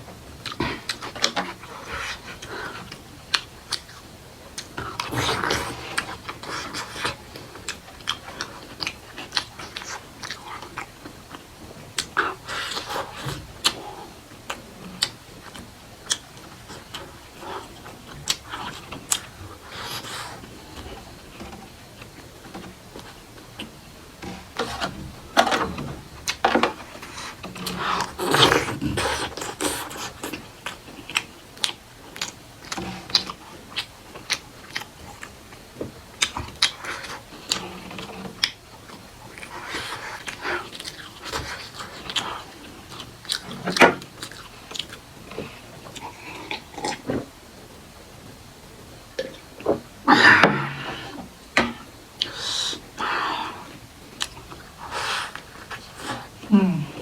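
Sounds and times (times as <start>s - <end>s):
person chewing: 0.4s - 21.4s, 24.4s - 35.3s, 36.2s - 47.2s.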